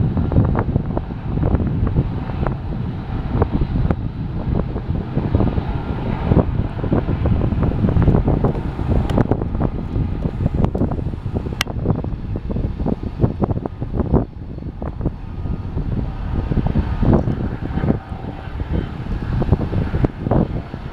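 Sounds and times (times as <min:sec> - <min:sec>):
freight train rumbling past: 0:00.0 - 0:20.9
wind buffeting microphone: 0:00.0 - 0:20.9.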